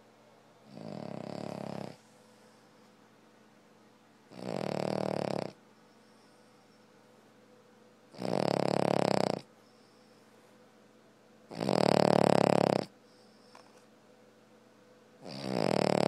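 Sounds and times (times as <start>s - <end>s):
dog snoring: 0.6s - 2.1s, 4.3s - 5.6s, 8.1s - 9.5s, 11.5s - 13.8s, 15.2s - 16.0s.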